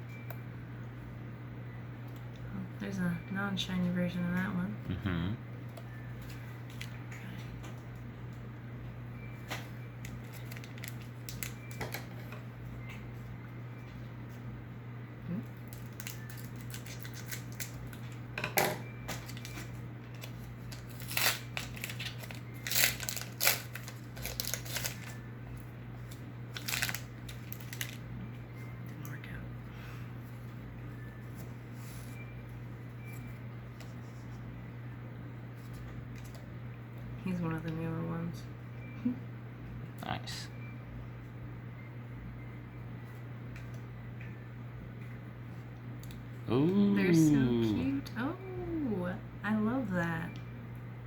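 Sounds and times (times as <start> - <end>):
steady low hum: 0.0 - 51.0
cards clicking and rustling: 19.2 - 25.1.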